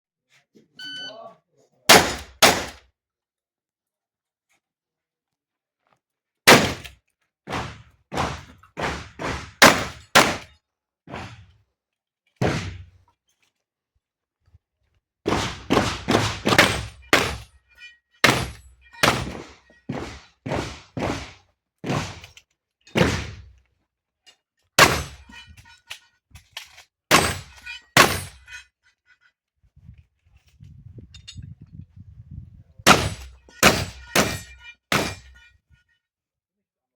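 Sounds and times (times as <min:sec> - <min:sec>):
shotgun shots: 0:01.9 - 0:02.8, 0:06.5 - 0:06.9, 0:08.9 - 0:10.5, 0:15.3 - 0:17.4, 0:24.8 - 0:25.2, 0:27.1 - 0:28.4, 0:32.9 - 0:35.3.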